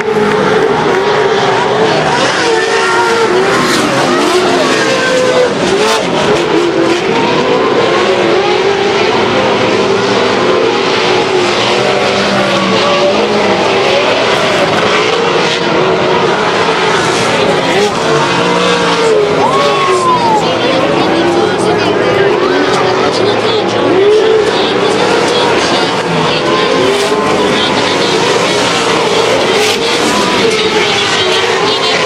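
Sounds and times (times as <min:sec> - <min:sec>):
racing engines accelerating: 0:00.0 - 0:32.0.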